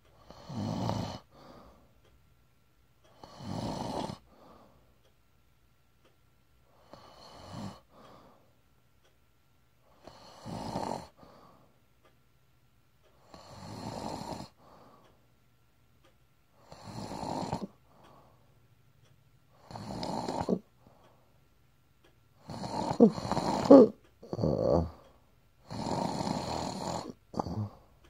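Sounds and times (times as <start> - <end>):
person snoring: 0.2 - 1.3, 3.2 - 4.3, 6.8 - 7.9, 10.0 - 11.2, 13.2 - 14.6, 16.6 - 17.8, 19.6 - 20.7, 22.4 - 27.9
faint breath: 1.3 - 2.1, 4.3 - 5.1, 6.7 - 8.6, 11.1 - 11.8, 14.6 - 15.3, 17.8 - 18.6, 20.8 - 21.4.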